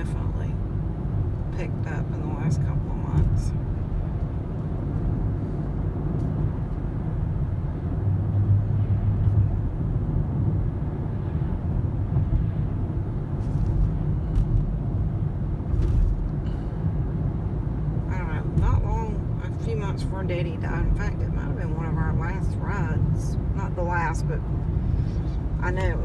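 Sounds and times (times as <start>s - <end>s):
car cabin road and engine rumble: 0.0s - 26.0s.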